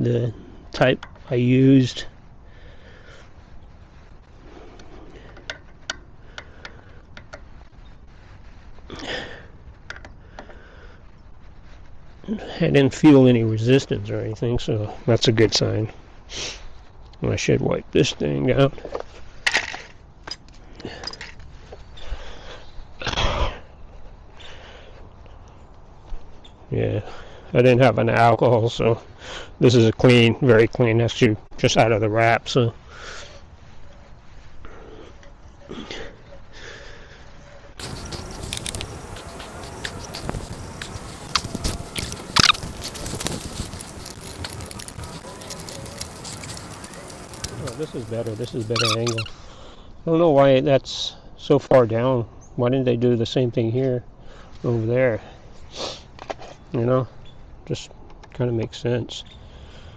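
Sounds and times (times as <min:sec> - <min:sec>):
cloth rubbing on metal parts: 0:37.8 - 0:49.3.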